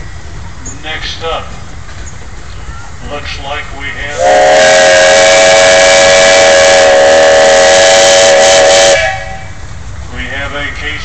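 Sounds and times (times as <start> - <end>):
steam engine whistle blast: 4.1 - 9.6.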